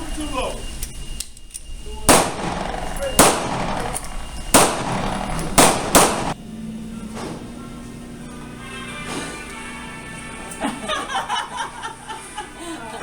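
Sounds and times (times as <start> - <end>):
pistol gunshots with echo: 2.1 - 6.4.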